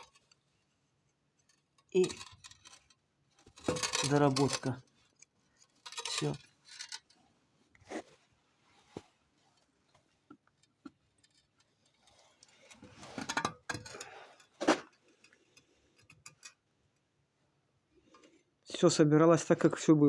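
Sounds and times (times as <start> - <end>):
metal parts clattering: 1.8 - 4.9, 5.6 - 7.2
metal parts clinking: 1.8 - 4.9, 5.6 - 7.2.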